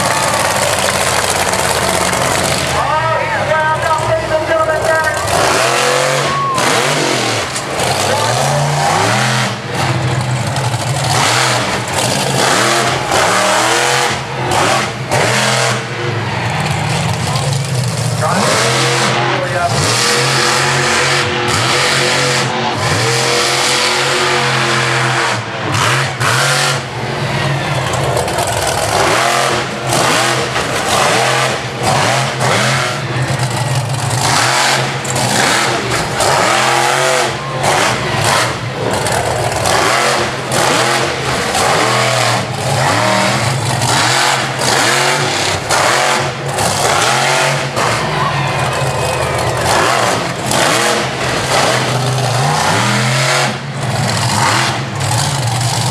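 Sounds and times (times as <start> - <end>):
monster truck engine revving: 0.0 - 55.9.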